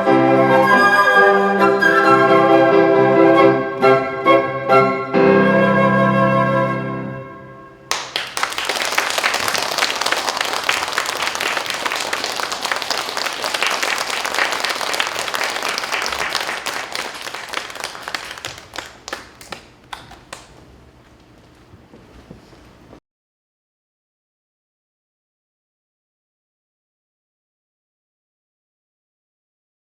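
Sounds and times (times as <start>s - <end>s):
flute music: 0.0s - 7.9s
audience applause: 7.9s - 20.6s.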